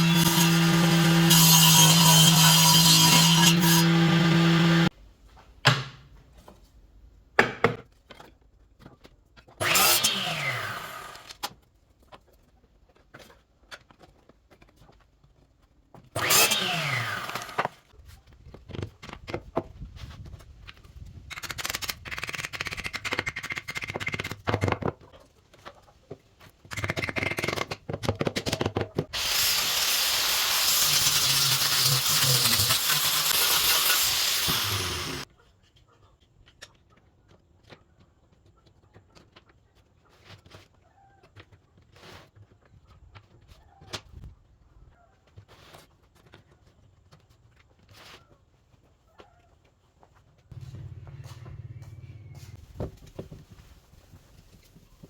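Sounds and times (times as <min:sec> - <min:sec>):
power tool running: 0:00.0 - 0:04.9, 0:09.6 - 0:11.3, 0:16.2 - 0:17.6, 0:29.2 - 0:35.2
short tool bursts: 0:29.2 - 0:35.2
knocks and scraping on wood: 0:50.5 - 0:55.0.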